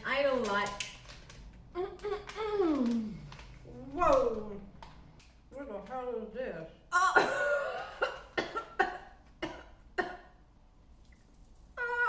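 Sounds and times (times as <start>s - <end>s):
woman's loud vocal outburst: 11.8s - 12.0s.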